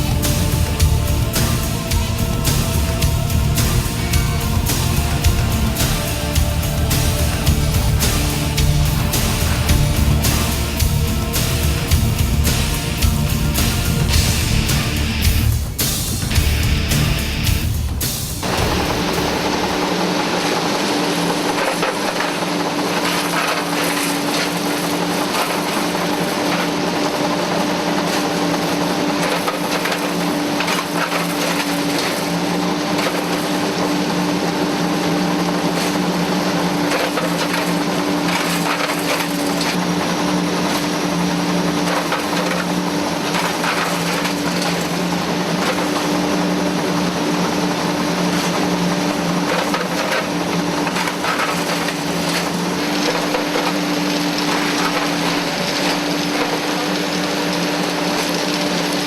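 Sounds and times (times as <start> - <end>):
heavy machinery humming: 0.0 - 59.0.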